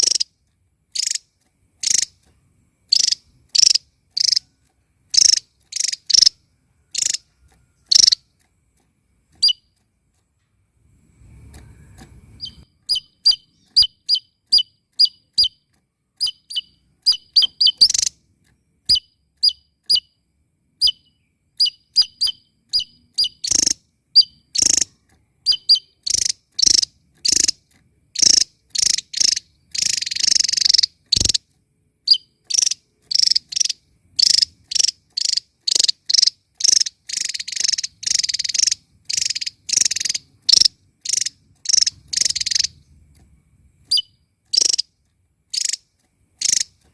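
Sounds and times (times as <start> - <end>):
bird chattering: 0.0 - 2.2, 2.9 - 8.3, 12.4 - 15.6, 16.2 - 18.2, 20.8 - 31.4, 32.1 - 42.8, 43.9 - 44.9, 45.5 - 46.9.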